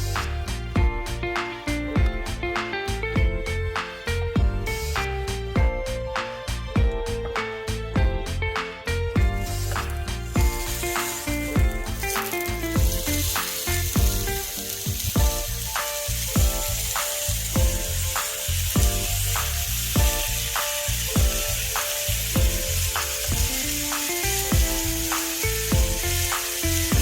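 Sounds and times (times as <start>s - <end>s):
background music with beat: 0.0s - 27.0s
food sizzling in waffle maker: 9.4s - 27.0s.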